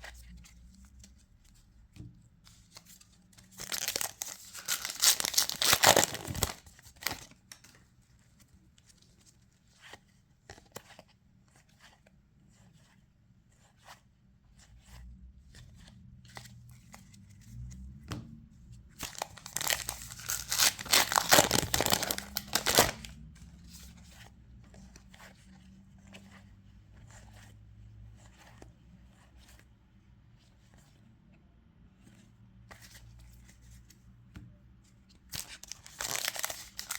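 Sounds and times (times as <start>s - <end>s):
wrapper tearing and crinkling: 3.6s - 7.2s, 19.0s - 23.1s, 35.4s - 36.9s.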